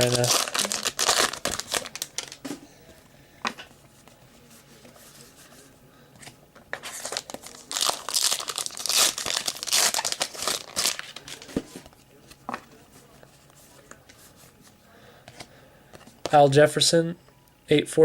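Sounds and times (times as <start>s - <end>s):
wrapper tearing and crinkling: 0.0s - 2.4s, 6.9s - 11.5s.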